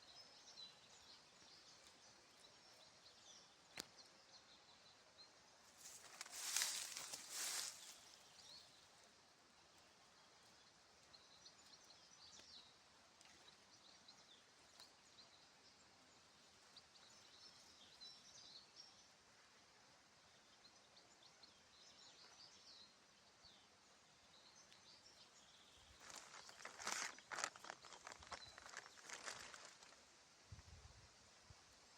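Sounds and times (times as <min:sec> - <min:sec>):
small birds chirping: 0:00.0 - 0:19.1, 0:20.4 - 0:30.1
rustling: 0:05.8 - 0:08.3, 0:26.0 - 0:30.0.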